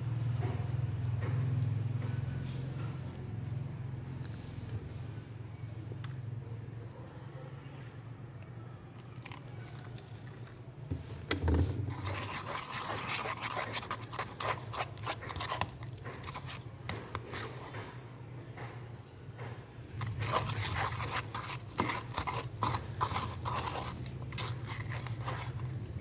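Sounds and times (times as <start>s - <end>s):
slime squelching and clicking: 11.9s - 17.8s, 19.9s - 26.0s.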